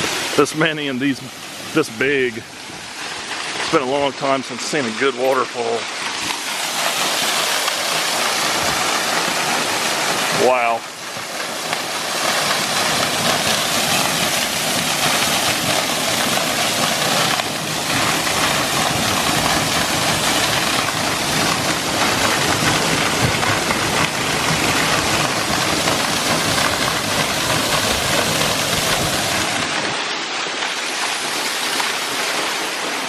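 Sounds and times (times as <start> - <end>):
waterfall pouring: 0.0 - 33.0.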